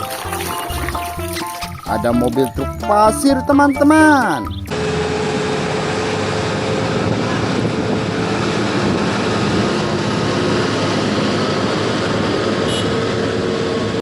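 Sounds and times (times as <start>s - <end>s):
water spraying: 0.0s - 4.7s.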